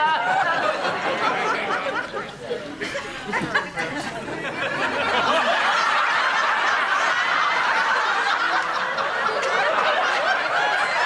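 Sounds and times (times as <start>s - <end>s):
audience laughing: 0.0s - 11.0s.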